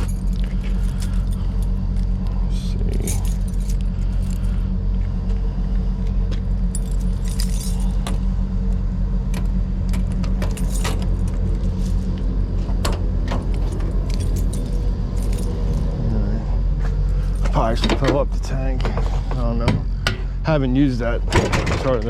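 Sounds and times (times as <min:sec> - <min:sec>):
metallic clinks and jangling: 0:00.0 - 0:04.6, 0:06.6 - 0:08.4, 0:10.0 - 0:12.2, 0:13.4 - 0:15.9
engine idling: 0:00.0 - 0:22.0.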